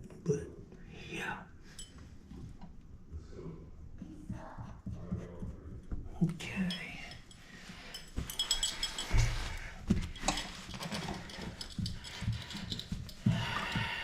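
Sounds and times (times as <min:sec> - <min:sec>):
metal tools clinking: 0:01.7 - 0:02.0, 0:06.3 - 0:14.0
metal parts rattling: 0:06.7 - 0:13.8.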